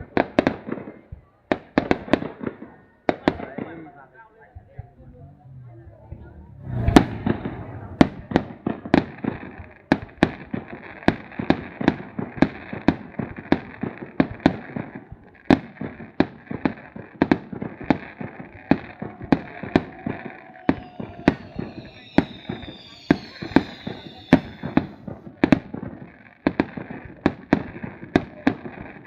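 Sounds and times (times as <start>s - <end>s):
fireworks banging: 1.6s - 29.0s
fireworks crackling: 4.6s - 29.0s
fireworks whistling: 5.0s - 9.2s, 17.8s - 25.3s.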